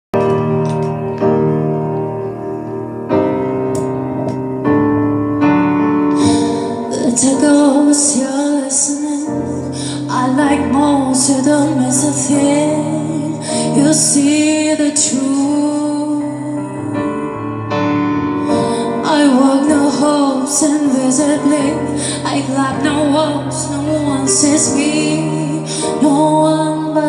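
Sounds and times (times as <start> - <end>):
piano chords: 0.1 - 27.0
woman singing: 6.2 - 17.3, 18.5 - 27.0.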